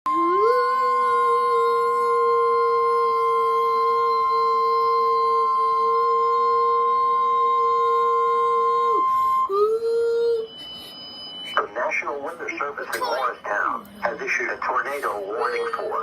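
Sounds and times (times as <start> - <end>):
high warning tone: 7.6 - 16.0.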